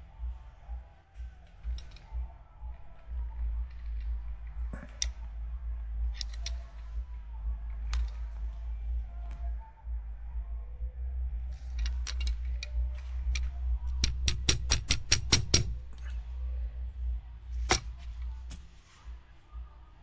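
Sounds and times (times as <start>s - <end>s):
low steady hum: 0.0s - 20.0s
sharp clicks: 11.6s - 16.1s.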